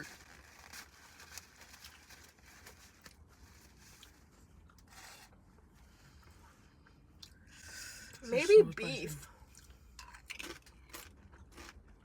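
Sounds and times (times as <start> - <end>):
soft rustle: 0.0 - 6.8.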